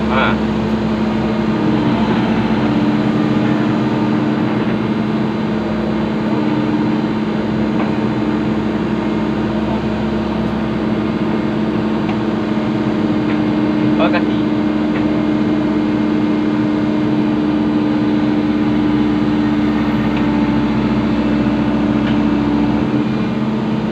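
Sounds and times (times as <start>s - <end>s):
diesel engine humming: 0.0s - 23.9s.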